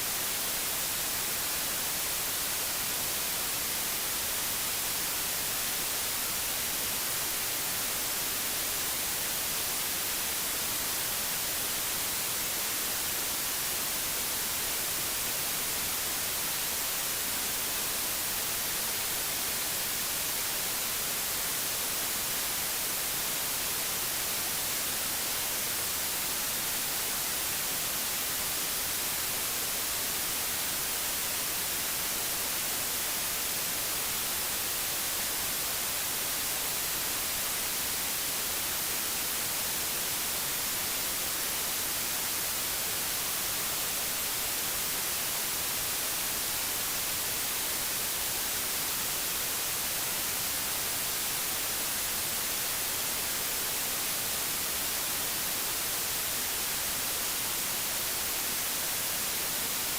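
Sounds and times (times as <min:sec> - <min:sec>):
white noise hiss: 0:00.0 - 0:59.9.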